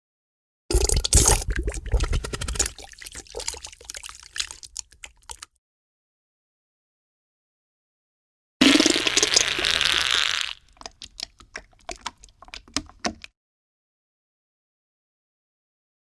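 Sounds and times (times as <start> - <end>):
fart sound effect: 8.6 - 10.6.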